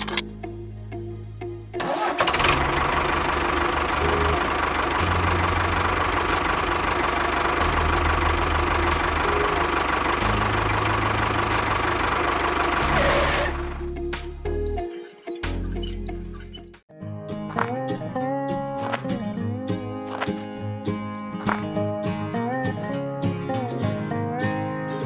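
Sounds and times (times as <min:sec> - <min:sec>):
background music: 0:12.8 - 0:25.0.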